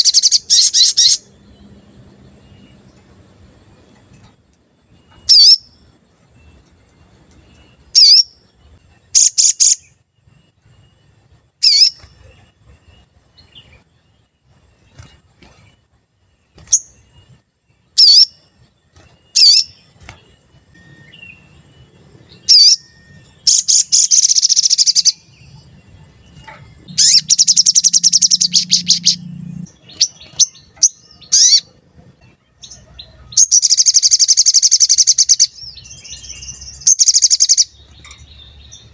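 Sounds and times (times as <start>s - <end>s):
songbird high calls: 0.0s - 3.1s, 4.9s - 5.8s, 7.4s - 9.9s, 11.6s - 13.8s, 18.0s - 18.4s, 19.2s - 38.9s
songbird chattering trills: 0.0s - 4.2s, 19.2s - 38.9s.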